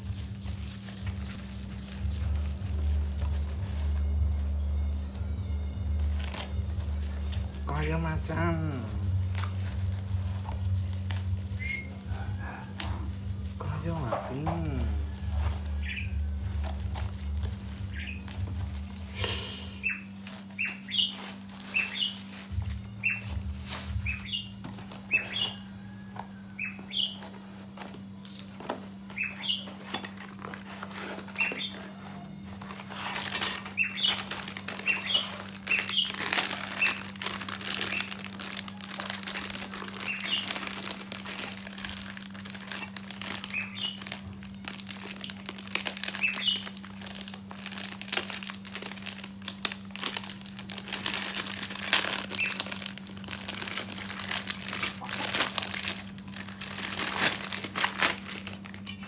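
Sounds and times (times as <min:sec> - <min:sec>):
plastic packaging crinkling: 0:00.0 - 0:59.0
steady low hum: 0:00.0 - 0:59.0
small bird chirping: 0:11.5 - 0:12.0, 0:17.9 - 0:18.3, 0:19.2 - 0:22.2, 0:22.9 - 0:23.4, 0:24.0 - 0:25.6, 0:26.6 - 0:27.2, 0:29.1 - 0:29.9, 0:33.7 - 0:36.2, 0:40.0 - 0:40.6, 0:43.4 - 0:44.0, 0:46.2 - 0:46.8.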